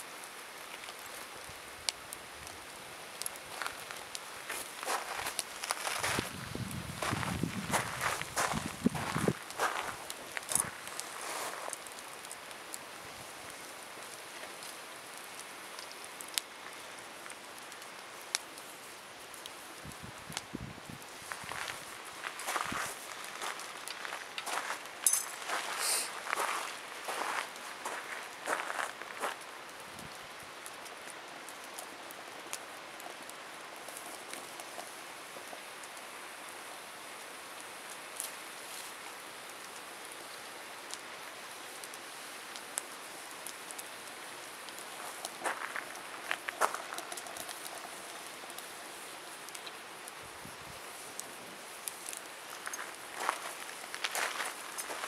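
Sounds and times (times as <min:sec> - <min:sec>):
firewood burning hiss: 0:00.0 - 0:55.0
wood popping: 0:44.5 - 0:50.2.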